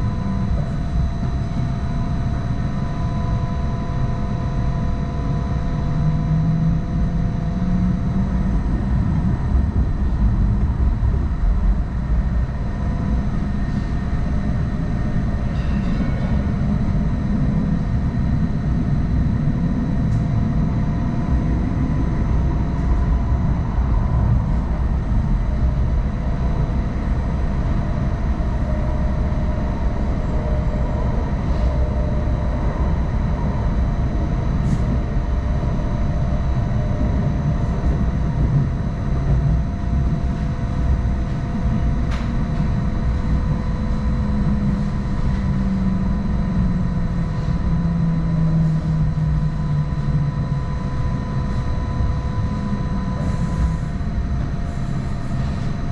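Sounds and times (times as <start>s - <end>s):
faint constant tones: 0.0s - 55.9s
light rail train rumbling: 0.0s - 55.9s.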